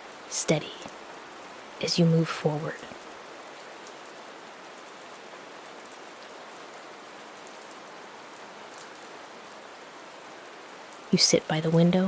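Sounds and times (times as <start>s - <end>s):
steady rain hiss: 0.0s - 12.0s
raindrop ticks: 7.4s - 9.1s.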